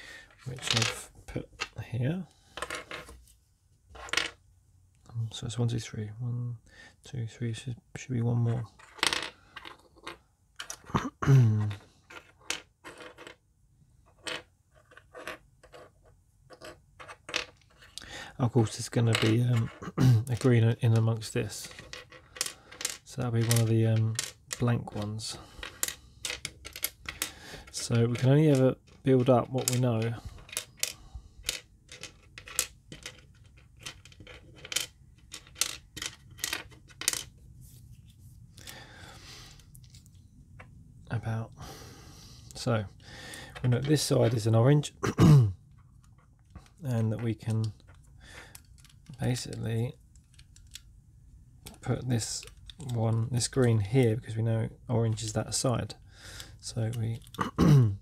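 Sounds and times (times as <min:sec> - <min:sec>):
plastic cube pieces clicking: 0:25.6 - 0:37.3, 0:47.6 - 0:50.9, 0:51.6 - 0:53.0, 0:56.4 - 0:57.4.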